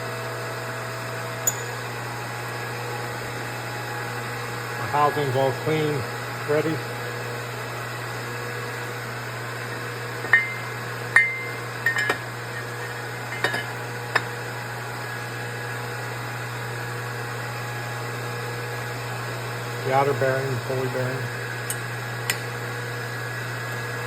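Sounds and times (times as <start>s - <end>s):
steady low hum: 1.3s - 16.6s, 18.7s - 22.4s.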